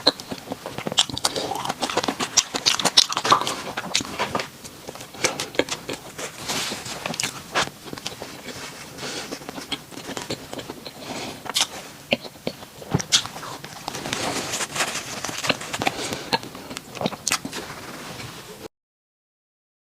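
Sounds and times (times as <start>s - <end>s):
biting and chewing bread: 0.0s - 18.4s
loud breathing: 6.2s - 9.6s, 10.7s - 12.0s, 13.4s - 16.8s.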